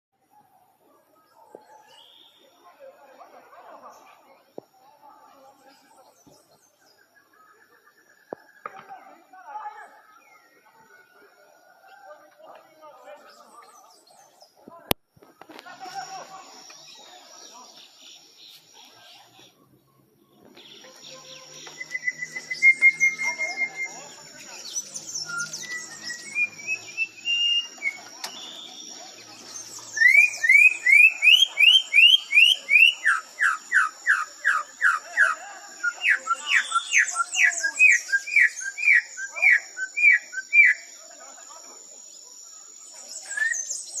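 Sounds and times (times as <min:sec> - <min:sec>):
bird whistling song: 0:20.6 - 0:41.0, 0:42.9 - 0:44.0.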